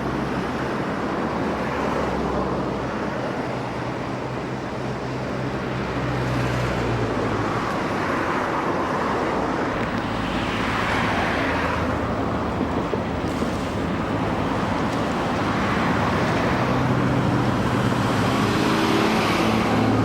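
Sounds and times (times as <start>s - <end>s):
broad rushing sound: 7.2s - 20.0s
engine humming: 11.2s - 20.0s.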